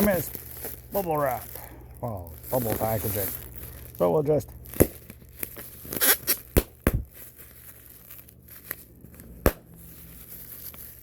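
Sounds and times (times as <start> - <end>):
bubble packaging crinkling: 0.0 - 11.0
bubble packaging popping: 4.6 - 7.3, 8.1 - 9.8.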